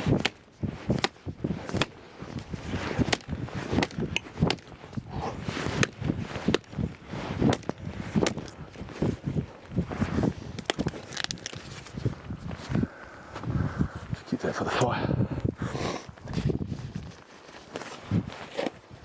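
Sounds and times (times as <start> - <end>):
footsteps crunching in snow: 0.0 - 13.5.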